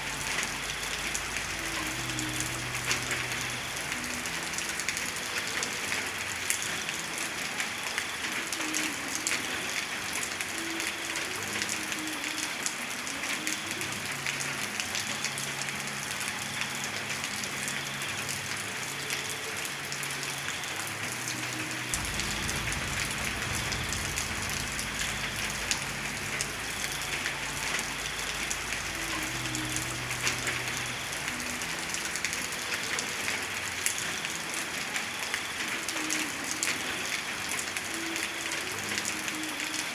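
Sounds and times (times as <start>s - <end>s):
heavy rain falling: 0.0s - 39.9s
deep low rumble: 22.0s - 26.9s.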